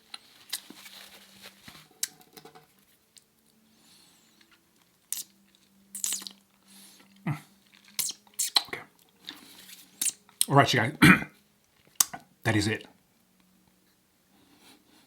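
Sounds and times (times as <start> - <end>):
sucking through teeth: 5.1 - 9.4, 10.0 - 10.2
mouth clicks: 6.0 - 6.4, 8.0 - 8.8.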